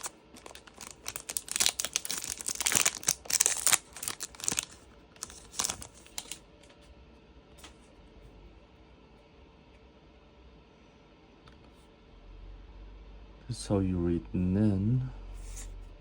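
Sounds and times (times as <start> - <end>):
wrapper tearing and crinkling: 0.0 - 6.4.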